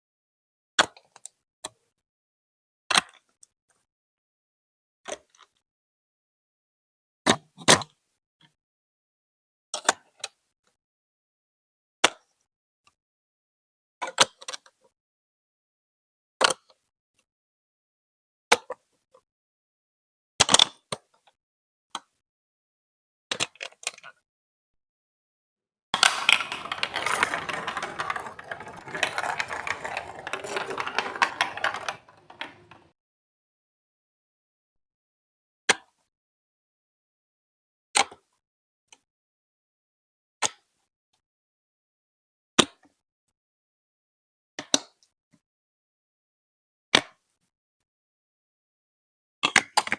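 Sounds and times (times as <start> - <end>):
marbles rolling through plastic track: 26.0 - 32.9
plastic bricks clicking together: 26.0 - 32.9.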